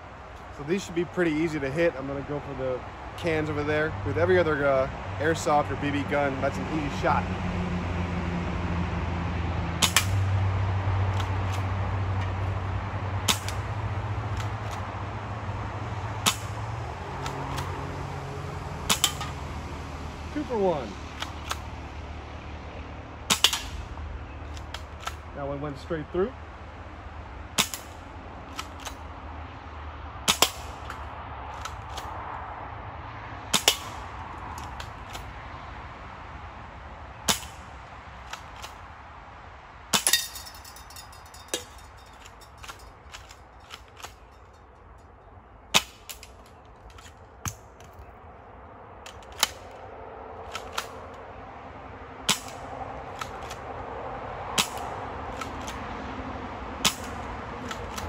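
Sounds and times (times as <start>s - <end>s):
air pistol shots: 23.3s - 23.8s
short metallic ring: 40.0s - 45.1s.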